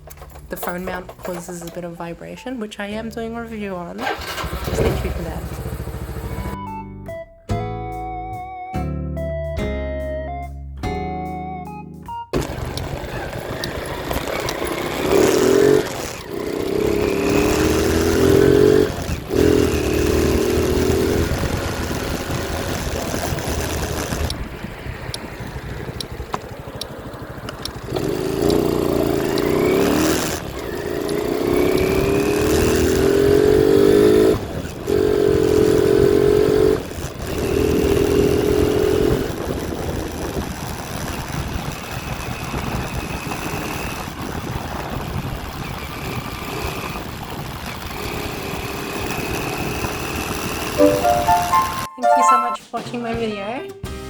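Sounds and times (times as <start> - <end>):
motorcycle engine accelerating: 4.0 - 6.6, 12.4 - 51.8.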